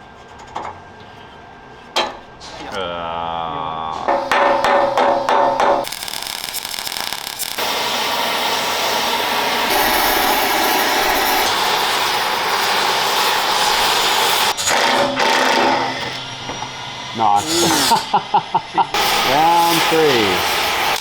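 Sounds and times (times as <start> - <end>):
power tool grinding on steel: 5.9 - 21.0.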